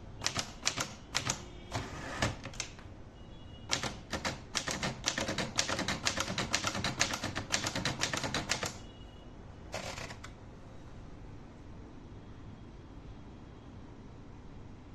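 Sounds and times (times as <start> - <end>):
typewriter key strikes: 0.2 - 1.5, 3.7 - 8.8.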